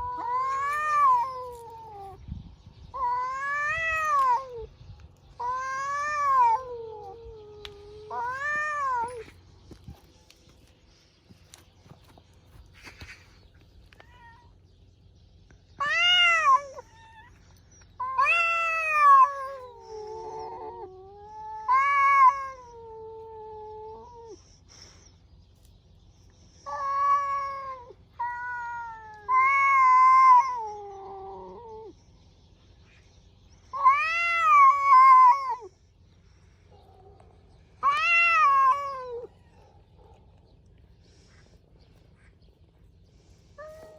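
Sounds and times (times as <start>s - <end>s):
cats yowling: 0.0s - 2.2s, 2.9s - 4.7s, 5.3s - 9.4s, 15.8s - 24.4s, 26.6s - 32.0s, 33.7s - 35.8s, 36.8s - 40.7s, 43.6s - 43.9s.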